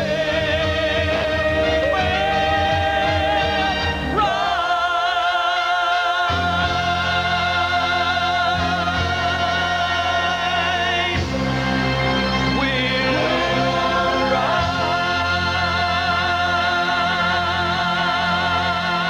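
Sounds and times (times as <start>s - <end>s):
vocal group singing held note: 0.0s - 19.0s
orchestral accompaniment: 6.4s - 19.0s.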